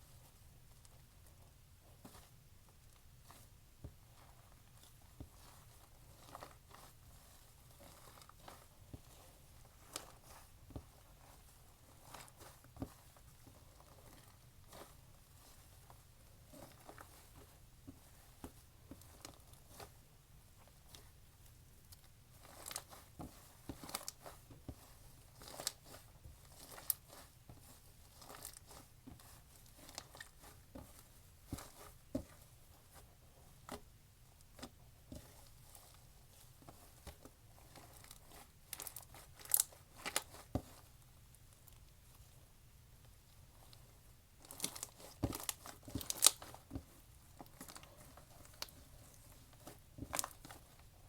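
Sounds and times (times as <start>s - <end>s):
slime crackling and popping: 44.5s - 46.6s.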